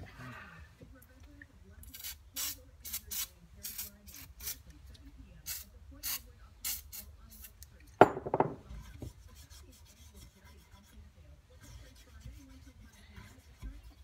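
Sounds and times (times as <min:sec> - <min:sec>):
faint rubbing and handling: 0:08.6 - 0:14.0.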